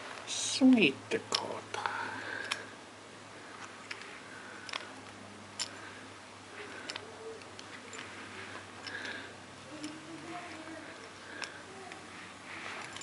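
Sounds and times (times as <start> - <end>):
low steady hum: 0.0 - 13.0
faint light clicks and ticks: 6.6 - 12.1.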